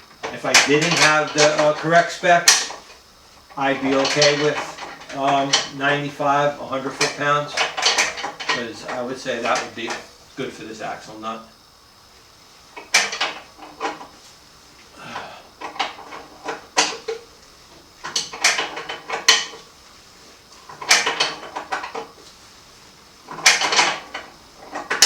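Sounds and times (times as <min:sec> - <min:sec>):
wrench clanking on axle nut: 0:00.2 - 0:10.2, 0:18.0 - 0:19.7, 0:20.6 - 0:22.2, 0:23.3 - 0:25.0.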